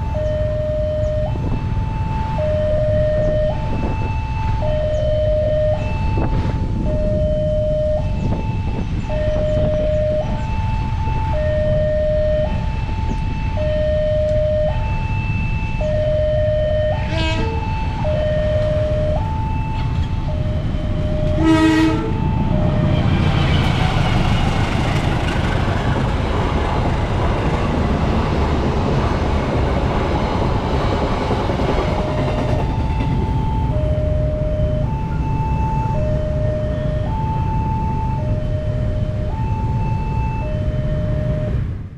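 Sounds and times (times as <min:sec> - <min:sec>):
level-crossing siren two tones: 0:00.0 - 0:24.2, 0:31.8 - 0:41.9
train rumble and wheel noise: 0:00.0 - 0:41.9
train horn blast: 0:16.9 - 0:18.0, 0:21.2 - 0:23.3.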